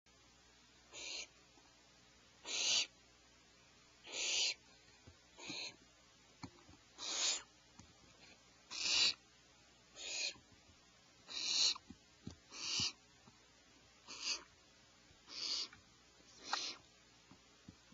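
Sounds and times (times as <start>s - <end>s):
owlets hissing calls: 0.9s - 1.4s, 2.4s - 3.0s, 4.0s - 4.6s, 5.4s - 5.8s, 7.0s - 7.5s, 8.7s - 9.2s, 10.0s - 10.4s, 11.3s - 11.8s, 12.5s - 13.0s, 14.1s - 14.5s, 15.3s - 16.8s.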